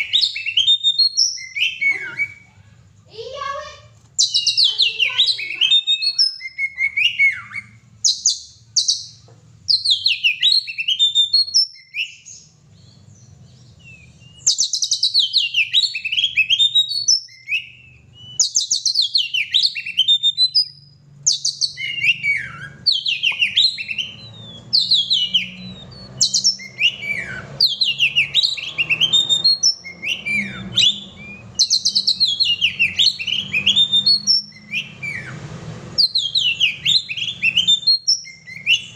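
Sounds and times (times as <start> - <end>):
bird singing whistled phrases: 0.0 - 13.0, 13.6 - 35.4, 36.0 - 38.9.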